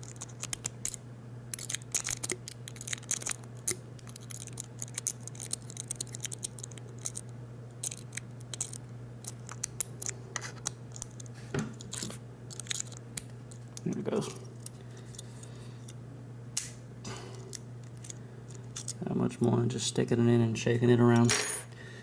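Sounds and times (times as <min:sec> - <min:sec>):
steady low hum: 0:00.0 - 0:22.0.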